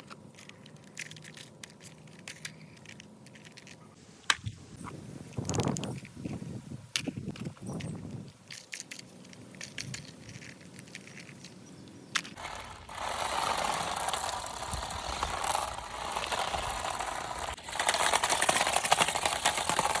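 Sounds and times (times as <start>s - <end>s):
handling clicks and rustling: 0.0s - 20.0s
toy car electric motor buzzing: 12.2s - 20.0s.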